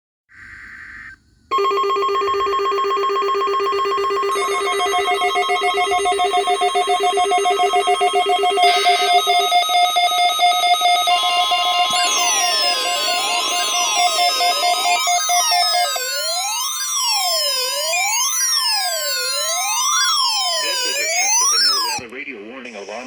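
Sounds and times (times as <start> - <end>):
trilling electronic alert tone: 1.5 - 22.0
buzzy data burst: 4.3 - 22.0.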